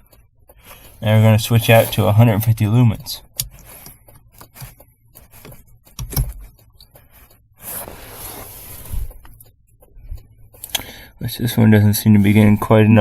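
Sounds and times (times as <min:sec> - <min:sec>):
small clicks and knocks: 0:02.8 - 0:07.4
scraping rustle: 0:06.4 - 0:09.3.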